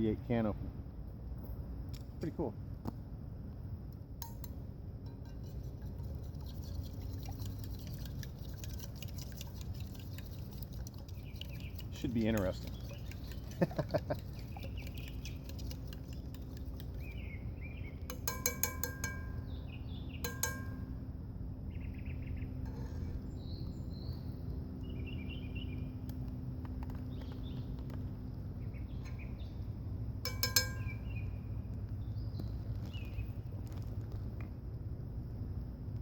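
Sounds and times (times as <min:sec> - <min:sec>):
metal cookware clinking: 0:04.2 - 0:06.0, 0:18.1 - 0:19.6, 0:20.2 - 0:20.9, 0:30.2 - 0:31.0
small birds chirping: 0:05.6 - 0:20.8, 0:21.7 - 0:33.9.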